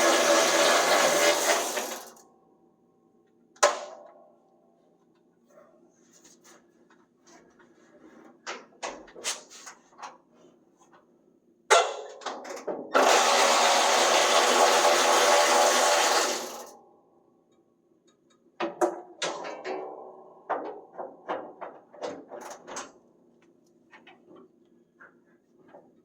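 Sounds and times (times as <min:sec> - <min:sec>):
power tool motor running: 0:00.0 - 0:02.2, 0:13.0 - 0:16.7.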